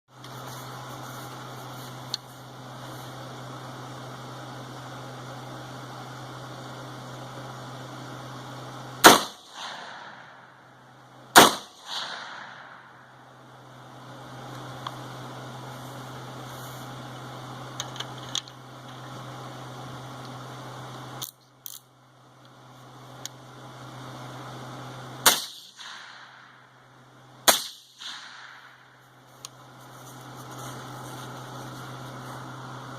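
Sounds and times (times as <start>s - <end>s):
suppressed rifle shots: 9.0s - 10.2s, 11.3s - 12.8s, 25.2s - 26.4s, 27.4s - 28.8s.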